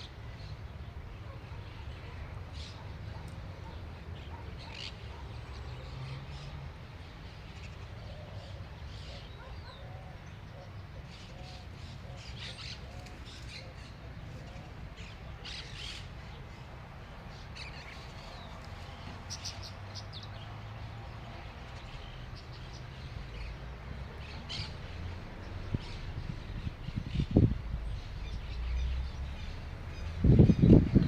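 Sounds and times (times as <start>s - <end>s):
birds chirping and squawking: 23.1s - 31.0s
steady low rumble: 24.2s - 31.0s.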